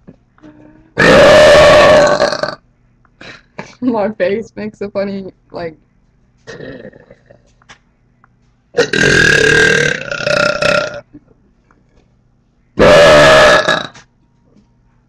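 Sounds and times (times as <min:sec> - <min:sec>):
loud forced burps: 0:01.0 - 0:02.6, 0:03.2 - 0:03.8, 0:06.5 - 0:07.4, 0:08.8 - 0:11.2, 0:12.8 - 0:14.1.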